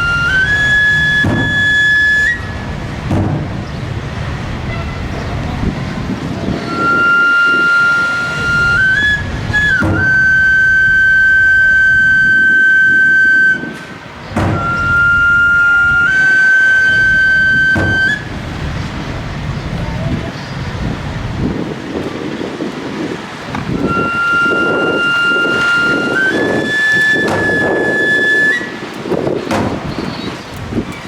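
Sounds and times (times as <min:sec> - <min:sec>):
wooden shawm playing high notes: 0:00.0 - 0:03.6, 0:06.5 - 0:18.4, 0:23.7 - 0:29.0
drum struck: 0:03.1 - 0:03.6, 0:09.8 - 0:10.2, 0:14.4 - 0:14.9.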